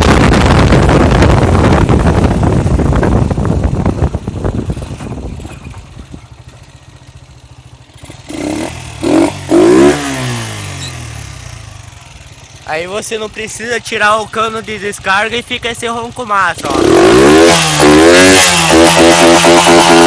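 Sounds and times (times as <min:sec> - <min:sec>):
wind on microphone: 0:00.0 - 0:06.6
motorcycle engine revving: 0:00.0 - 0:20.0.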